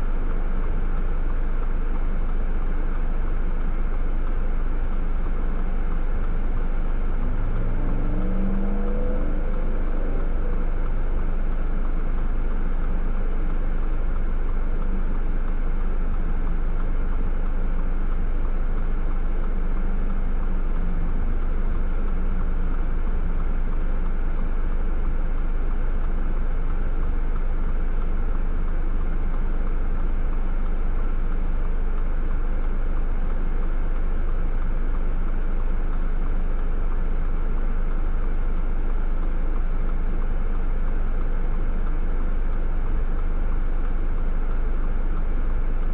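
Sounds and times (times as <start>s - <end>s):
car driving: 4.8s - 28.9s.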